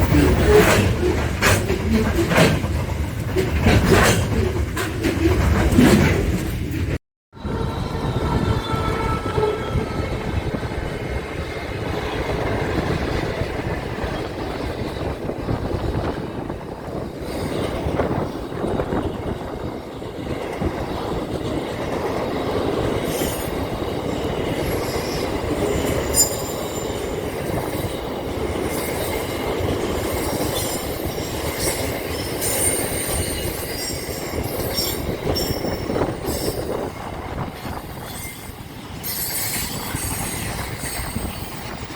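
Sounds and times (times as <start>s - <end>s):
train rumbling on rails: 0.0s - 41.9s
high-pitched wheel squeal: 7.4s - 10.5s, 24.6s - 27.0s.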